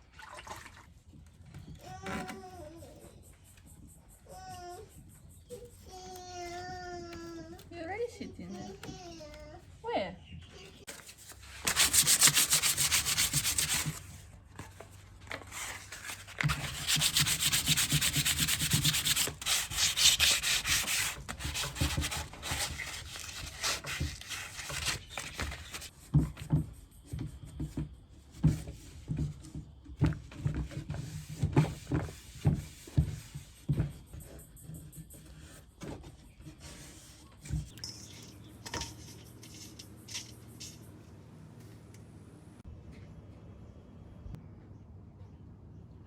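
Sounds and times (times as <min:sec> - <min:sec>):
sandpaper rubbing on wood: 0:11.6 - 0:14.0, 0:16.5 - 0:25.9.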